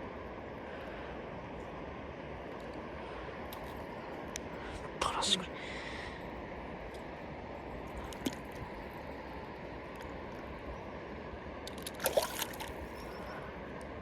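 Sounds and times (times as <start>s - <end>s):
splashy rattling noises: 11.8s - 12.8s.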